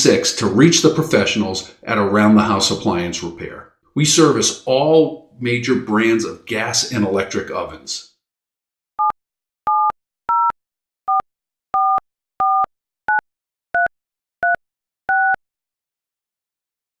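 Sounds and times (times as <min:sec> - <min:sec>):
touch-tone keypad beeps: 0:09.0 - 0:10.5, 0:11.8 - 0:13.2, 0:13.8 - 0:15.4.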